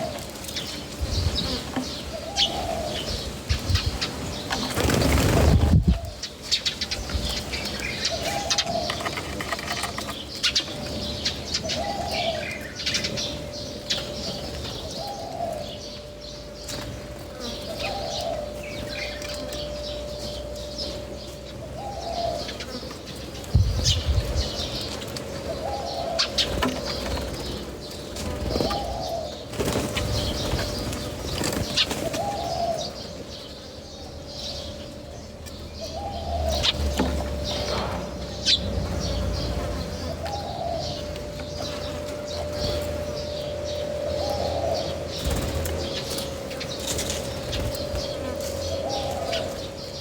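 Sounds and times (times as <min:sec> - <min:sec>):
pigeons cooing: 0:00.0 - 0:50.0
wings flapping: 0:04.6 - 0:06.0.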